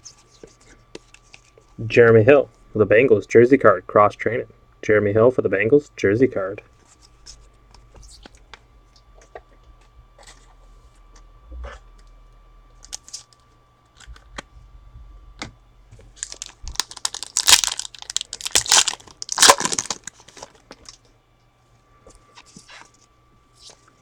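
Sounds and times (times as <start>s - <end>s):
foil wrapper crinkling and tearing: 12.8s - 13.3s, 16.2s - 21.0s
cards clicking and rustling: 16.2s - 21.0s.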